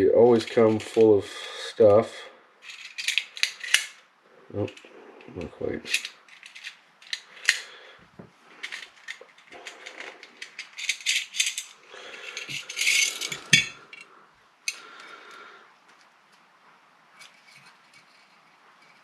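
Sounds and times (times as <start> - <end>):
metal gun parts clicking and rattling: 2.6 - 4.0, 5.8 - 7.7, 8.6 - 14.1.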